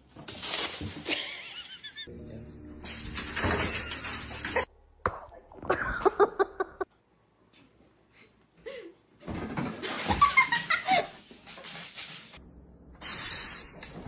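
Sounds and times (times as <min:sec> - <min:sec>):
person laughing: 0:05.7 - 0:06.9.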